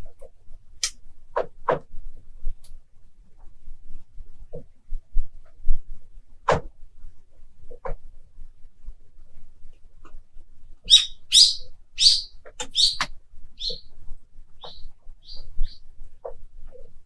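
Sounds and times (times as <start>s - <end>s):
lake ice chirping pings: 10.9s - 13.9s, 14.6s - 15.8s.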